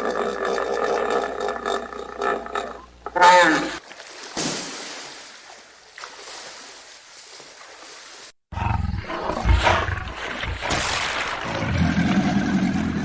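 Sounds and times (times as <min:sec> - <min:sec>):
deep rumbling animal call: 0:00.0 - 0:03.8, 0:11.5 - 0:13.0
large animal call falling in pitch: 0:00.1 - 0:03.8.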